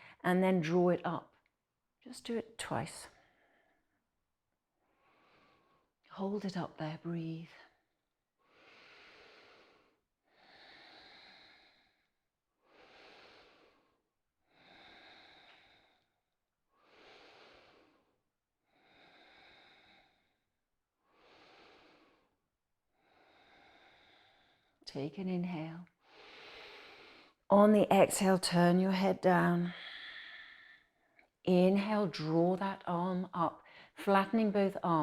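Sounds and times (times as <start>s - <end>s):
slow deep breathing: 4.8s - 6.0s, 8.4s - 22.4s, 23.0s - 24.8s, 26.0s - 27.4s, 29.7s - 31.3s.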